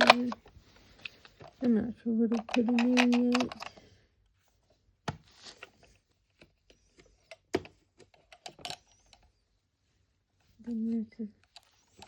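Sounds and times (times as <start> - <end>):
plastic toys clicking and tapping: 0.0 - 3.9, 7.2 - 9.2.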